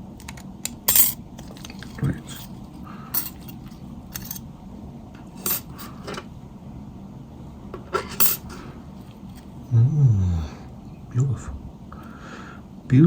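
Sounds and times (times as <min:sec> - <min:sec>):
small metal tools clicking: 0:03.1 - 0:04.4.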